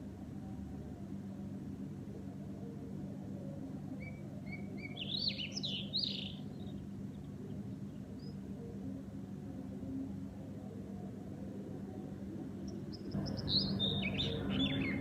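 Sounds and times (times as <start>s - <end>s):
steady low hum: 0.0s - 15.0s
songbird singing: 3.7s - 9.8s, 12.6s - 15.0s.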